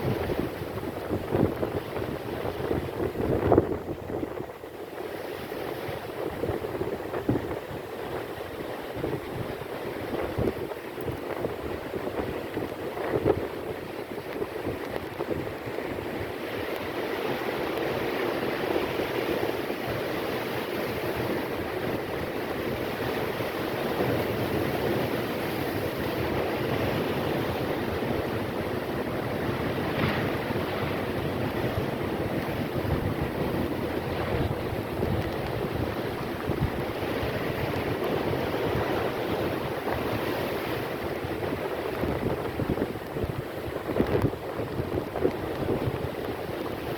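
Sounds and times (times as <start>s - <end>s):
waves crashing: 0.0s - 46.9s
wind: 0.0s - 46.9s.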